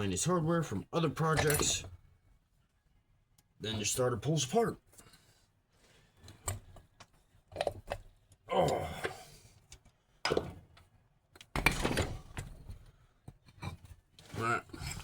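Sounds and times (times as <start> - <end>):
metal clunks and clicks: 1.4 - 1.9, 10.2 - 10.6
rattling clatter of metal parts: 11.6 - 12.8.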